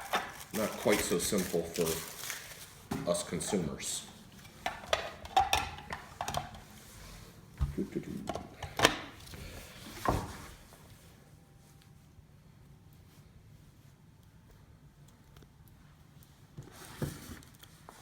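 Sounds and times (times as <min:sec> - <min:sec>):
packaging knocks scrapes and rustles: 0:00.0 - 0:06.2.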